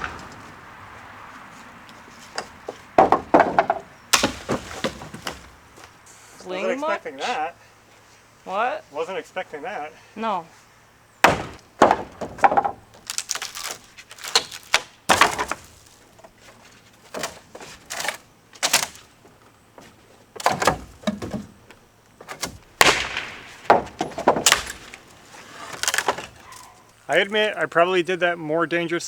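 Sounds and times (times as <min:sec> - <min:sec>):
wood cracking and banging: 0:00.0 - 0:06.0, 0:11.2 - 0:27.6.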